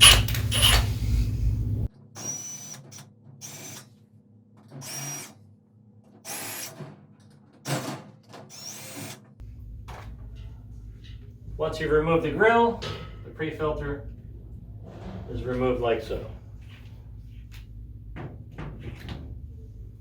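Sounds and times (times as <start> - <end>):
screw gun whirring: 0.0 - 1.6, 2.2 - 4.0, 4.7 - 5.4, 6.2 - 6.9, 7.7 - 9.4
loud low hum: 0.0 - 1.9, 9.4 - 20.0.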